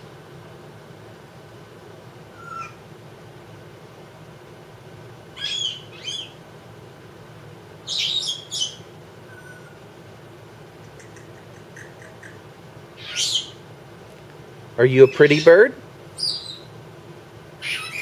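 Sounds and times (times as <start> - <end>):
parrot harsh calls: 2.3 - 2.8, 5.4 - 6.4, 7.9 - 9.8, 11.0 - 13.6, 16.2 - 16.7, 17.6 - 18.0
parrot falling whistle: 2.4 - 2.7.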